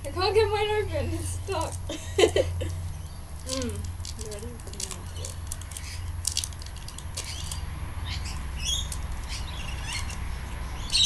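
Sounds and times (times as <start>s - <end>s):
wrapper crinkling: 2.7s - 7.7s.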